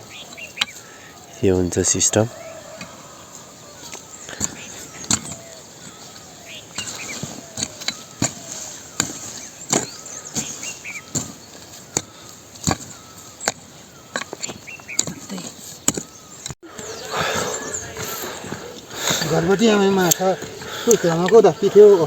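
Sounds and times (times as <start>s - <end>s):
faint birds chirping: 0.0s - 22.0s
hoe striking soil: 3.9s - 16.1s.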